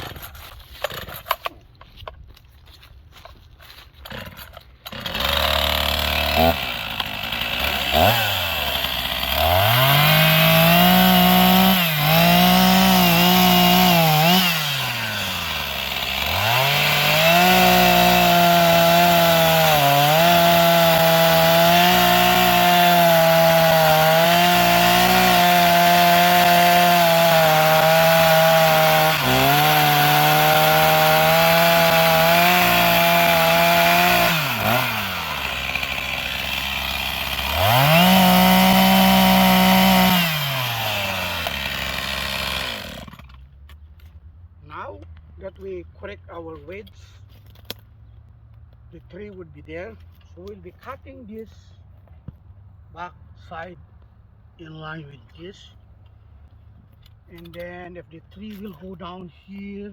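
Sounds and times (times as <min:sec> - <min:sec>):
chainsaw cutting wood: 0:00.0 - 0:01.6, 0:04.0 - 0:43.5.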